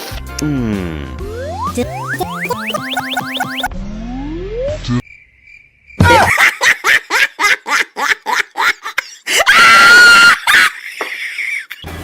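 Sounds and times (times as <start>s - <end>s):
high-pitched laughter: 6.0s - 11.8s
shrill scream: 9.4s - 10.5s.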